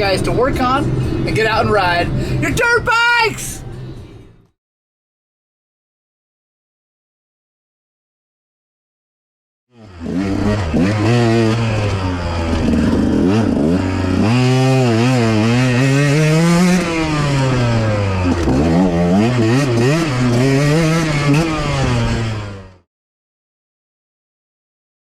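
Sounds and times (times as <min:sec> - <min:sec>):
motorcycle engine revving: 0:09.7 - 0:22.9.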